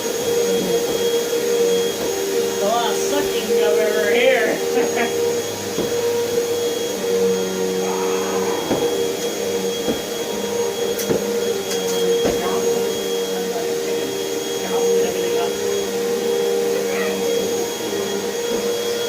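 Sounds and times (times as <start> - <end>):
vacuum cleaner running: 0.0 - 19.0.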